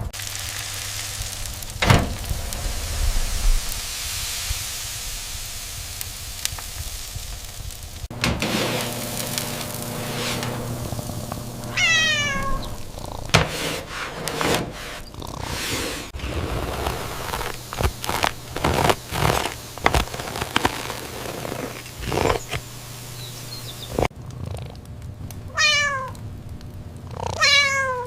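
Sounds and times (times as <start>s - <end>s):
food sizzling in a pan: 0.1s - 13.0s, 16.2s - 24.1s
cat meow: 11.7s - 12.9s, 25.5s - 26.2s, 27.4s - 28.0s.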